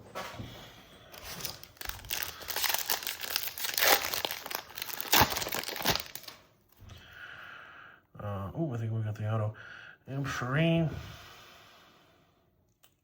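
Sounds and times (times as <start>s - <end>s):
foil wrapper crinkling and tearing: 1.2s - 6.4s.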